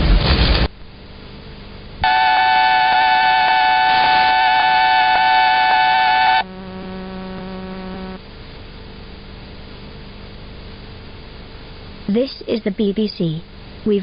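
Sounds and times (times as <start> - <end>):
low buzzing tone: 0.7 - 12.1
high buzzy electronic alert tone: 2.0 - 8.2.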